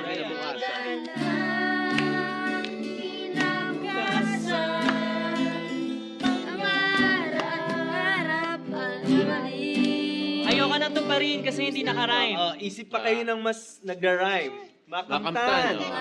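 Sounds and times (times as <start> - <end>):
young voices singing: 0.0 - 12.0, 15.3 - 16.0
guitar strumming: 0.9 - 12.4.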